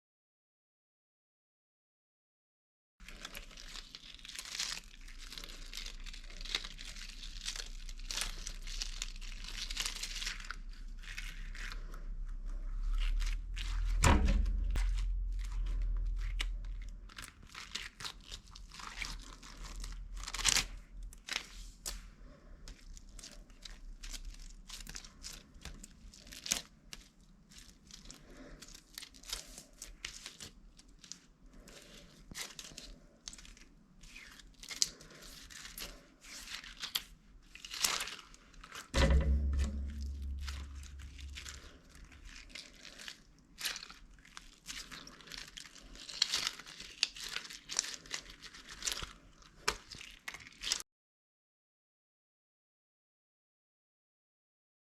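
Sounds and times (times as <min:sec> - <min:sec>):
plastic bag crinkling: 0:03.0 - 0:50.8
low bump: 0:11.8 - 0:17.2, 0:39.0 - 0:42.1.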